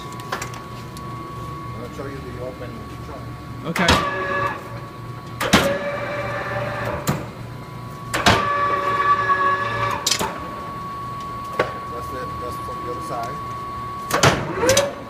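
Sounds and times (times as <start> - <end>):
lathe motor whine: 0.0 - 15.0
steady high-pitched hum: 0.0 - 15.0.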